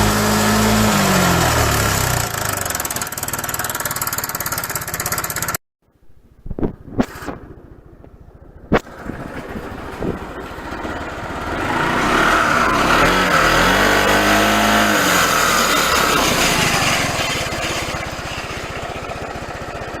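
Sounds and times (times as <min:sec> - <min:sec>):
scooter engine idling and revving: 0:00.0 - 0:05.6, 0:07.0 - 0:20.0
hissing scrape: 0:14.7 - 0:19.0.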